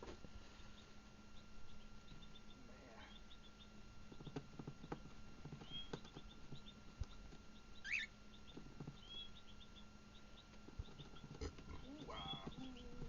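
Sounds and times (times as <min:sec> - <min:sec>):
cockatiels chirping: 0:05.6 - 0:13.0.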